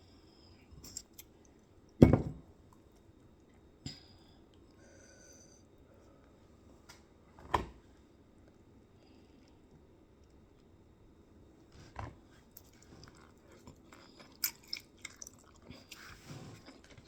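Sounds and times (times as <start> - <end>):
tableware knocks: 2.0 - 2.4.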